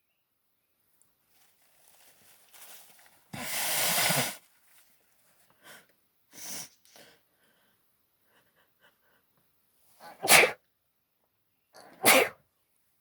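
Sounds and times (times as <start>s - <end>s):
short sniffs: 3.4s - 4.4s, 6.3s - 7.2s, 10.0s - 10.6s, 11.8s - 12.4s
woman sneezing: 10.0s - 10.6s, 12.0s - 12.4s.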